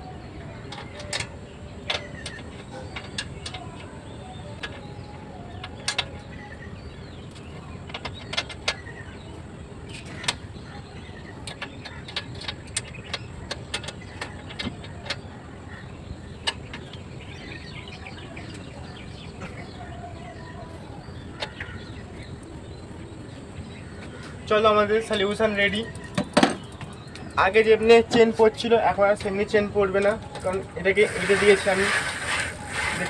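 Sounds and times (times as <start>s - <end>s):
low background noise: 0.0s - 33.0s
spanner clicking on metal: 30.4s - 33.0s.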